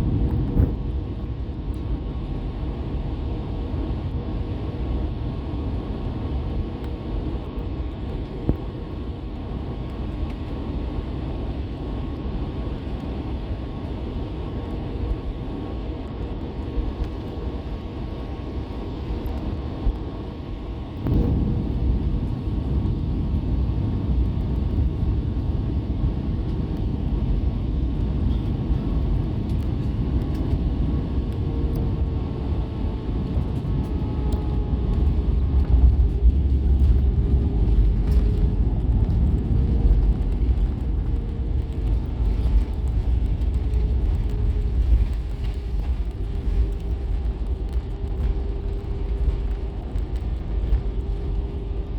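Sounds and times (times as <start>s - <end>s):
aircraft engines and airflow rumble: 0.0s - 51.9s
wheels touching down on runway: 20.8s - 51.9s.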